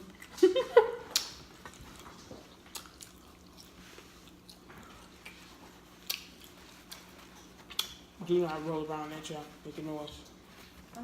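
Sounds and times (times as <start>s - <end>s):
faint chewing: 0.0s - 8.2s.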